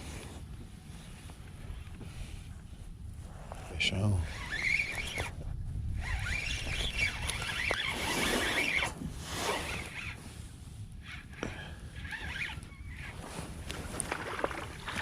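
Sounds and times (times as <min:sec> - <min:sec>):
wind rumble on microphone: 0:00.0 - 0:15.0
fishing reel squeaky whirring: 0:04.2 - 0:10.3, 0:10.9 - 0:15.0.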